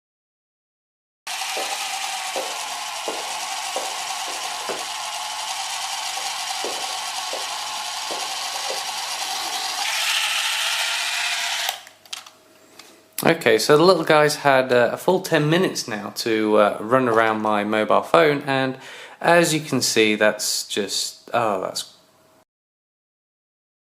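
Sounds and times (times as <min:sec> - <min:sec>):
small motor whirring: 0:01.3 - 0:12.0.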